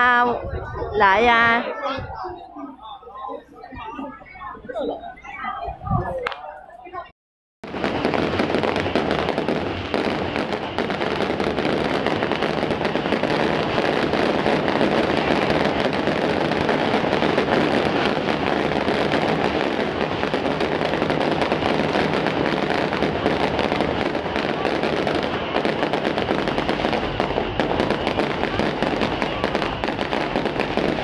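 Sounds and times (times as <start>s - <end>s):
fireworks crackling: 7.6s - 31.0s.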